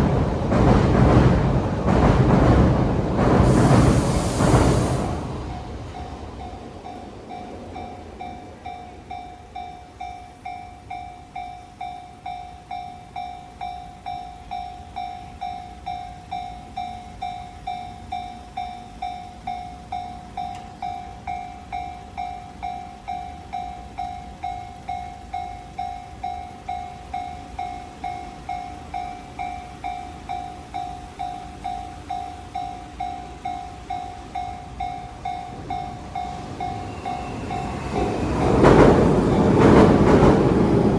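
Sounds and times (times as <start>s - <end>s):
level-crossing bell ringing: 16.6s - 39.6s.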